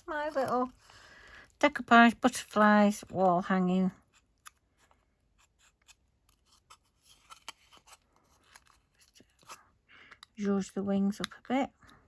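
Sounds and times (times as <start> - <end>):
paper rustling: 4.2 - 9.6.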